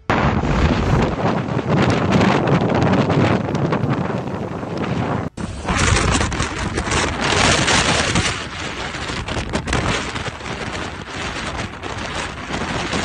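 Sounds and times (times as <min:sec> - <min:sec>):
wind buffeting microphone: 0:00.0 - 0:13.0
crackling knocks: 0:03.4 - 0:13.0.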